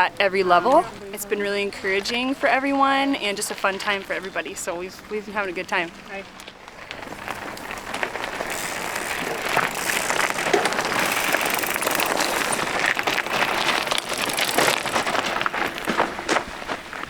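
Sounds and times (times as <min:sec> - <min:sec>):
bike tyres crunching on trail: 0:00.0 - 0:17.0
small clicks and rattles: 0:06.3 - 0:16.4.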